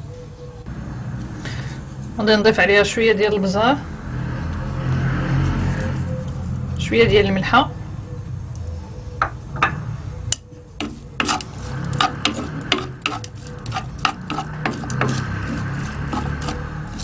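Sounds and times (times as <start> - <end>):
spoon scraping a dish: 10.5 - 17.0.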